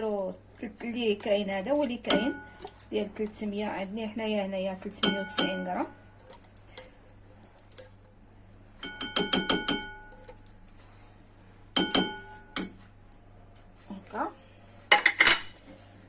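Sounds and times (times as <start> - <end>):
utensil clinking against bowl: 8.8 - 10.5.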